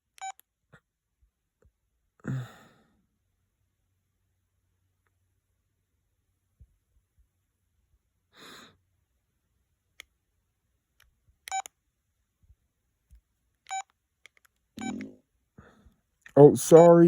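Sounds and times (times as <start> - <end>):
phone keypad beeps: 11.5 - 11.7, 13.7 - 13.9, 14.8 - 15.1
soft breath: 15.6 - 16.1.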